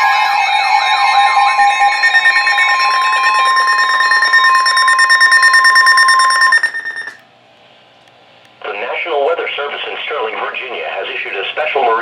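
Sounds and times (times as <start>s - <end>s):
fast pulsing beep: 0.0s - 7.2s
second steady tone: 0.0s - 7.2s
steady alarm tone: 0.0s - 7.2s.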